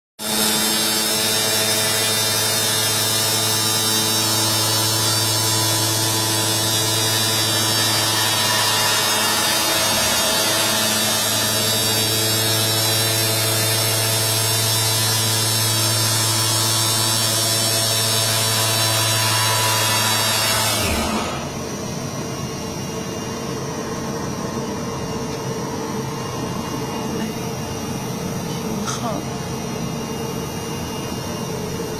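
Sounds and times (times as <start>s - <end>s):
loud electric buzz with hiss: 0.2s - 21.8s.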